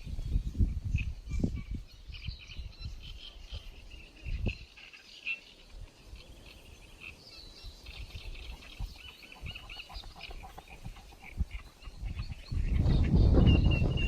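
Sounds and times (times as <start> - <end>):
lower arched bird calls: 0.0 - 14.0.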